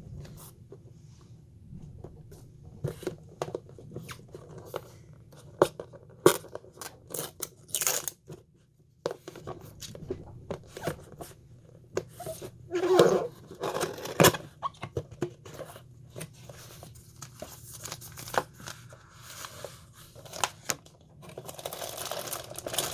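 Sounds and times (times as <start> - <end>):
packaging rustling and clicking: 9.1 - 22.9.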